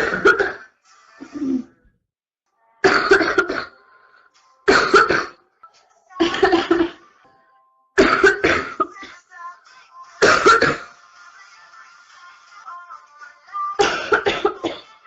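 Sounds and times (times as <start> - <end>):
girl coughing: 0.0 - 0.6, 2.9 - 3.7, 4.7 - 5.4, 6.2 - 7.0, 8.0 - 9.1, 10.2 - 10.9, 13.8 - 14.9.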